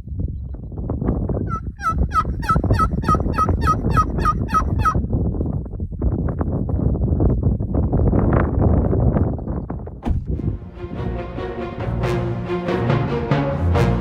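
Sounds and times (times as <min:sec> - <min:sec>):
turkey calling: 0:01.5 - 0:05.0
steady low noise: 0:10.0 - 0:14.0.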